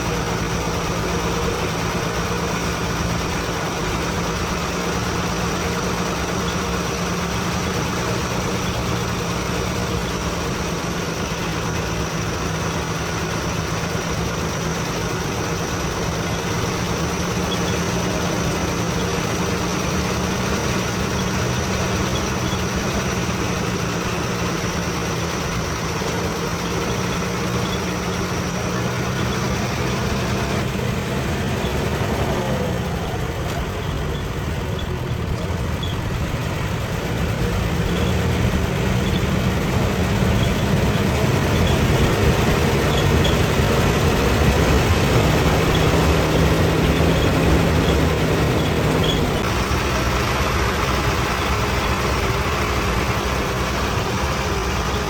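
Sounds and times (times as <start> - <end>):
diesel engine running steadily: 0.0 - 55.0.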